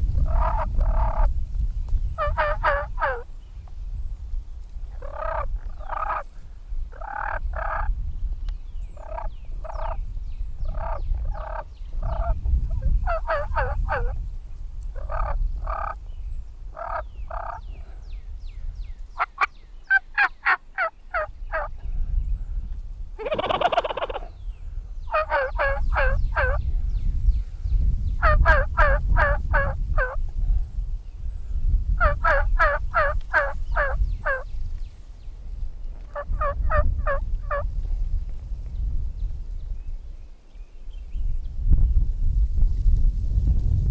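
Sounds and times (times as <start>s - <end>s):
steady low rumble: 0.0s - 3.0s
turkeys gobbling: 0.2s - 1.3s, 2.2s - 3.2s, 5.0s - 6.3s, 6.9s - 7.9s, 9.0s - 10.0s, 10.7s - 14.1s, 15.0s - 16.0s, 16.8s - 17.6s, 19.2s - 21.7s, 23.2s - 24.3s, 25.1s - 26.6s, 28.2s - 30.2s, 32.0s - 34.4s, 36.0s - 37.6s.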